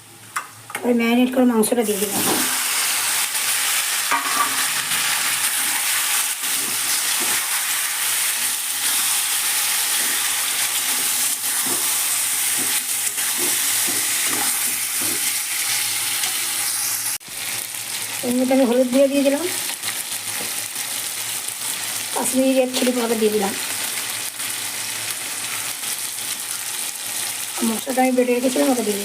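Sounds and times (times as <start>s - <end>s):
chicken sizzling in hot oil: 1.7s - 29.0s
spatula scraping and knocking pan: 4.1s - 5.0s, 6.4s - 7.6s, 9.9s - 15.4s.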